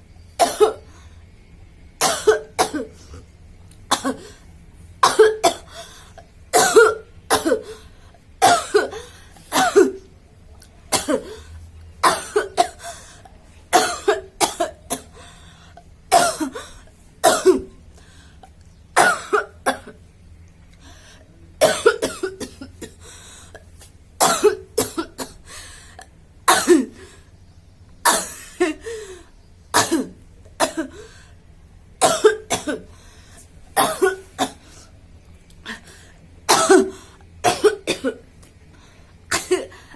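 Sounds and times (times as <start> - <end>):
woman coughing: 0.4 - 0.8, 2.0 - 2.9, 3.9 - 4.3, 5.0 - 5.7, 6.6 - 7.7, 8.4 - 10.0, 10.9 - 11.4, 12.0 - 13.0, 13.7 - 15.2, 16.1 - 17.7, 19.0 - 20.0, 21.6 - 23.0, 24.2 - 25.4, 26.5 - 27.0, 28.0 - 29.0, 29.8 - 31.0, 32.0 - 32.9, 33.8 - 34.7, 36.5 - 38.2, 39.3 - 39.8.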